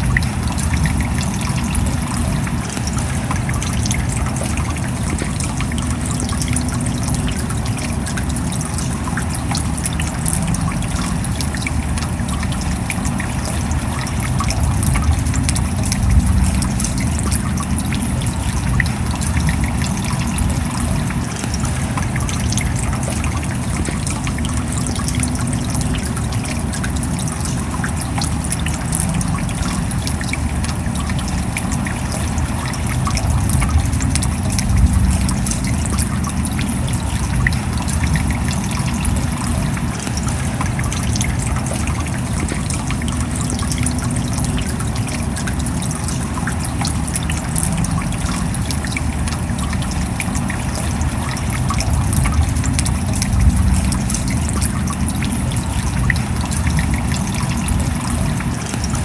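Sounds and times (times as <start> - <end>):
rain falling: 0.0 - 59.0
deep low rumble: 14.2 - 21.2, 33.0 - 39.7, 51.7 - 57.2.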